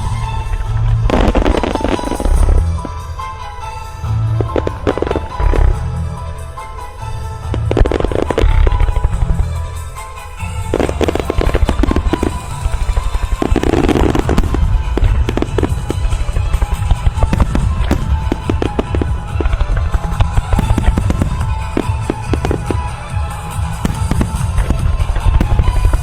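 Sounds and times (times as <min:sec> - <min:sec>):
firework crackle: 0:00.0 - 0:26.0
music: 0:00.0 - 0:26.0.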